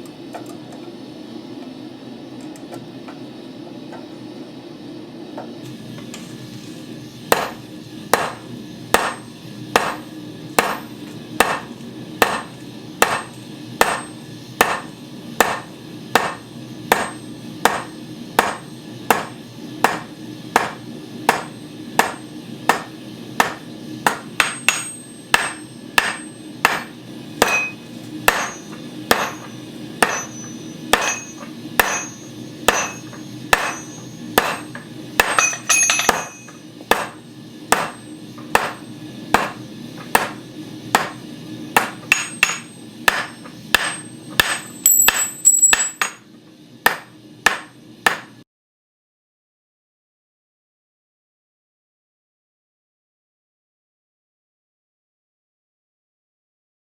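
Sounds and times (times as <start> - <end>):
hammer striking hot rivet: 7.3 - 41.2, 41.8 - 46.2, 46.8 - 48.4
high metallic ring: 24.6 - 26.4, 27.4 - 34.4, 35.3 - 36.7, 43.9 - 46.2.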